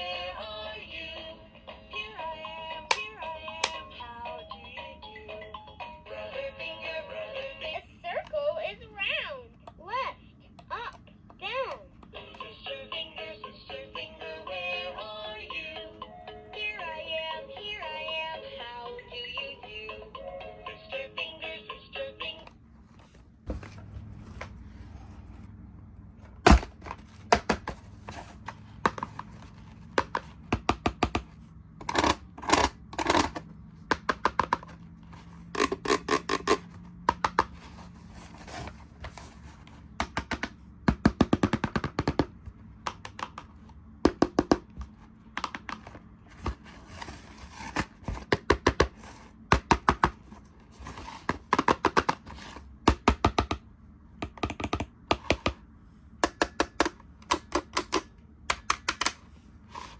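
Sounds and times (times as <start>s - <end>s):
plastic toys clicking and tapping: 28.8s - 34.8s, 35.5s - 37.6s, 40.0s - 46.6s, 51.2s - 52.3s, 54.2s - 55.6s, 56.2s - 59.2s.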